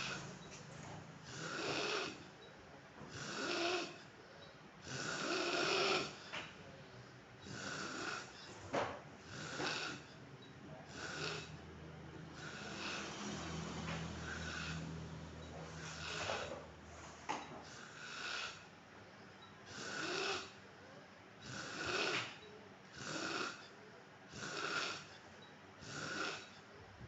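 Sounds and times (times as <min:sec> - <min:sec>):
man snoring: 0:00.0 - 0:00.3, 0:01.2 - 0:02.3, 0:03.1 - 0:04.0, 0:04.8 - 0:06.3, 0:07.4 - 0:08.4, 0:09.2 - 0:10.1, 0:10.9 - 0:11.7, 0:12.3 - 0:16.7, 0:17.7 - 0:18.6, 0:19.7 - 0:20.6, 0:21.4 - 0:23.7, 0:24.3 - 0:25.1, 0:25.8 - 0:26.5.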